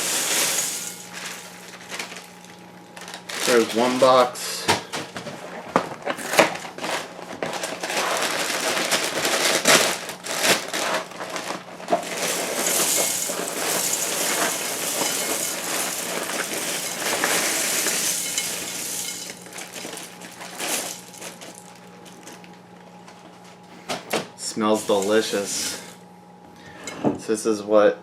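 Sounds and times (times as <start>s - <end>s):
cereal pouring into a bowl: 0.0s - 2.1s, 12.0s - 21.4s.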